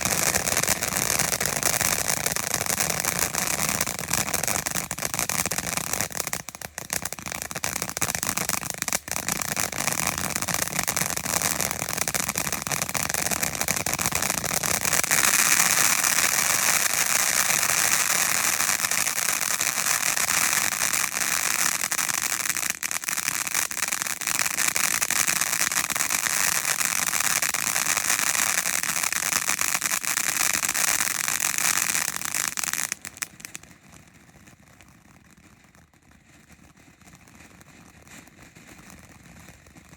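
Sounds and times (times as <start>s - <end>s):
ground fountain firework hissing: 0.0s - 34.6s.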